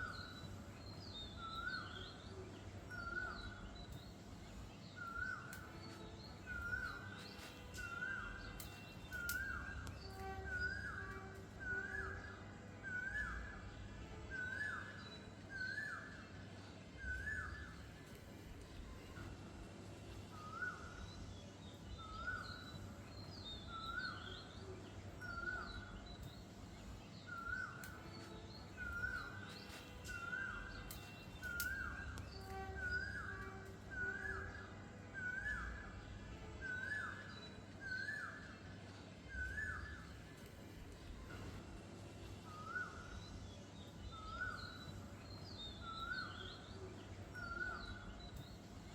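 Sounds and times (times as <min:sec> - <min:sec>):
faint high bird chirps: 0:00.0 - 0:16.4, 0:20.2 - 0:38.7.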